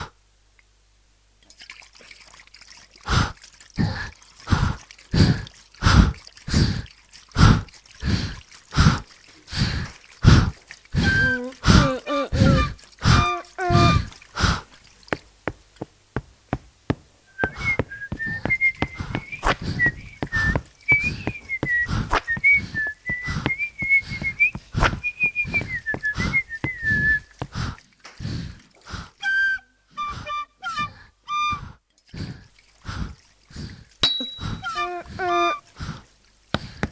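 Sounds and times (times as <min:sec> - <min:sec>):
vocal chugging puffs: 0:03.1 - 0:14.7, 0:17.4 - 0:36.0
person whistling: 0:11.0 - 0:14.1, 0:17.3 - 0:27.3, 0:29.2 - 0:31.7, 0:34.0 - 0:35.7
wavering toots: 0:11.0 - 0:14.1, 0:17.3 - 0:27.3, 0:29.2 - 0:31.8, 0:34.0 - 0:35.7.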